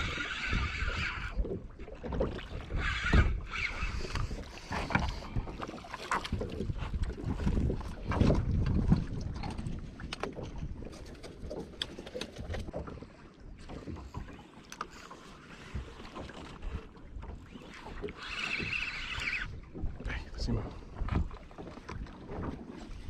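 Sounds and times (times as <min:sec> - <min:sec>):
wind buffeting microphone: 0:00.0 - 0:11.6.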